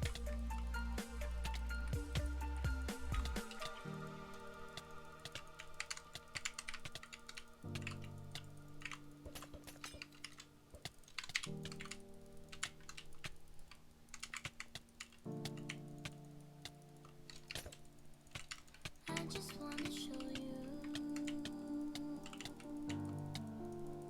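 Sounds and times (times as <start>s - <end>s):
background music of held chords: 0.0s - 10.0s
keyboard keystroke clicks: 14.1s - 23.8s.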